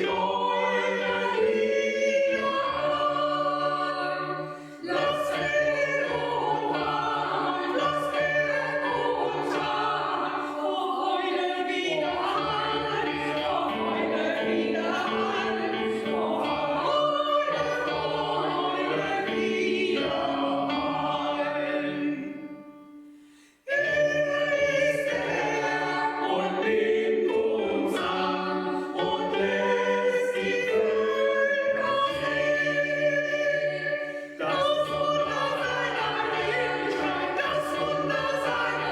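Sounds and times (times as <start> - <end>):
choir singing sustained chords: 0.0 - 38.9.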